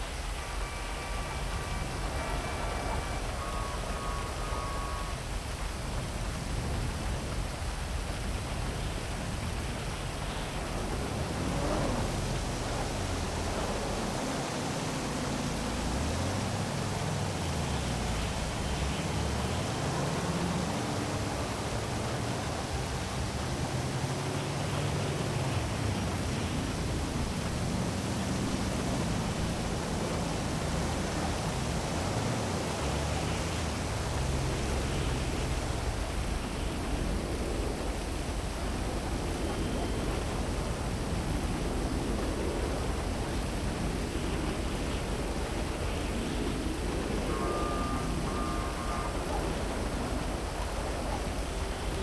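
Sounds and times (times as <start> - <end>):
heavy rain hissing: 0.0 - 52.0
low hum of city traffic: 0.0 - 52.0.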